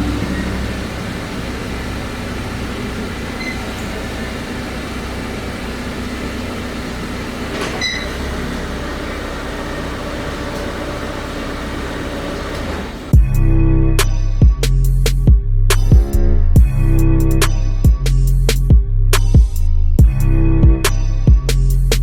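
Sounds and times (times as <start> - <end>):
vehicle rumbling: 0.0 - 22.0
short high squeak: 3.4 - 3.9, 7.6 - 8.3.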